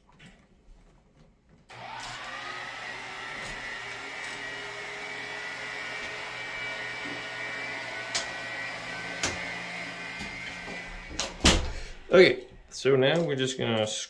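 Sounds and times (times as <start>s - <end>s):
electric motor whirring: 1.7s - 12.6s.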